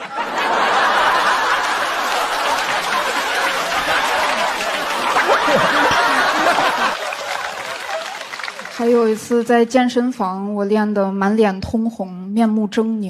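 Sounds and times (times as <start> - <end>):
individual laughs: 0.0 - 8.2
audience laughing: 0.0 - 8.8.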